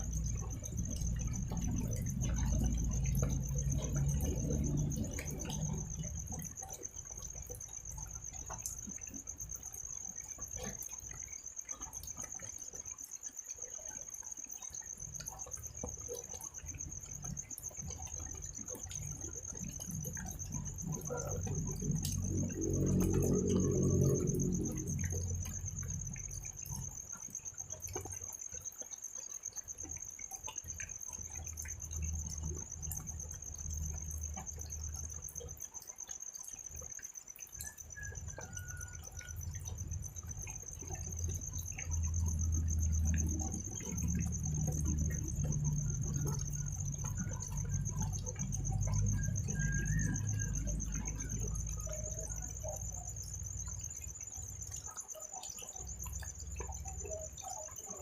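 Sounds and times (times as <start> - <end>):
cricket trilling: 0.0 - 58.0
light drizzle: 0.0 - 58.0
small drips: 0.0 - 58.0
low rumble: 19.7 - 27.0.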